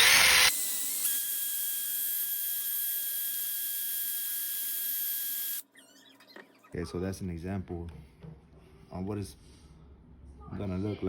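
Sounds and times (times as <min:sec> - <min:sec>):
drill sanding plastic: 0:00.0 - 0:05.6.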